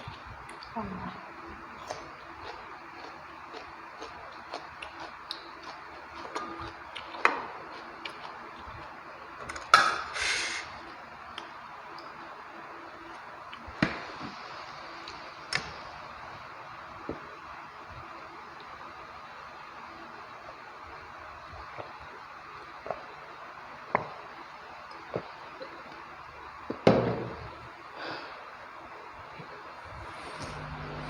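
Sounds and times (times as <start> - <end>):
person chewing food: 1.6 - 9.1.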